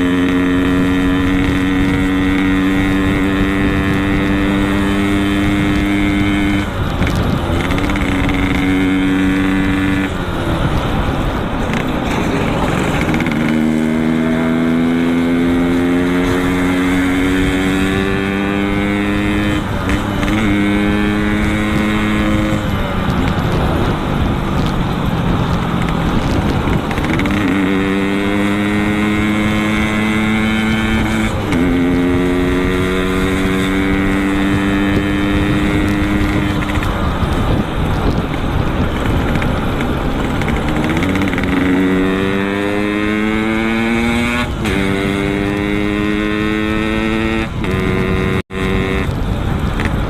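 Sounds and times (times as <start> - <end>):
motorcycle engine accelerating: 0.0 - 50.0
wind and road noise: 0.0 - 50.0.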